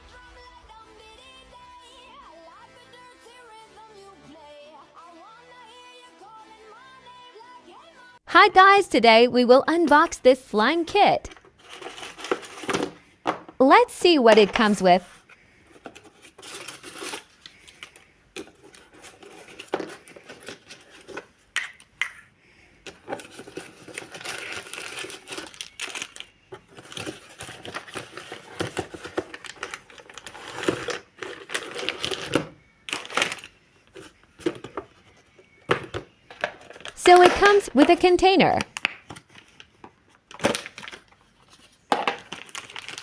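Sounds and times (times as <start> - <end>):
packaging crinkling and tearing: 10.7 - 13.1, 14.4 - 22.0, 22.9 - 35.2, 35.8 - 38.0, 38.6 - 43.0.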